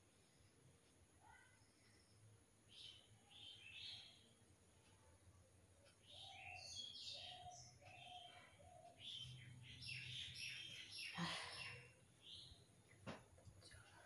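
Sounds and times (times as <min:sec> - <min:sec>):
faint bird chirps: 0:01.2 - 0:13.0.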